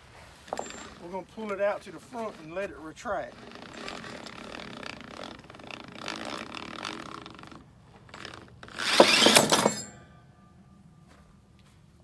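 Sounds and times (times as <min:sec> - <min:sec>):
strap webbing pulled out rattling: 0:03.3 - 0:09.8
strap reel winding back zip: 0:03.3 - 0:09.9.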